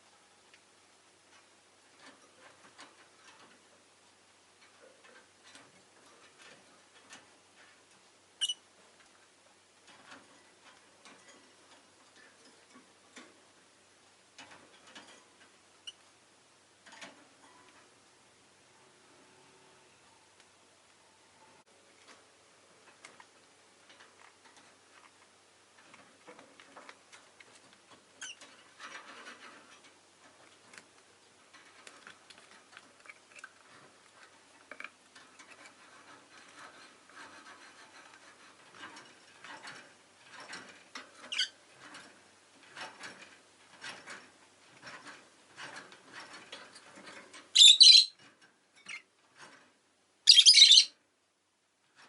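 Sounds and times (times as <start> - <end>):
faint scratching and clicking: 0.0 - 51.1, 51.8 - 52.0
lovebird shrill calls: 47.6 - 48.2, 50.2 - 50.9.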